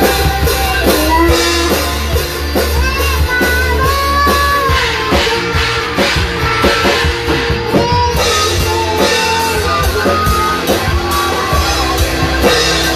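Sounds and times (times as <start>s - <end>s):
rock music with drums and guitar: 0.0s - 12.9s.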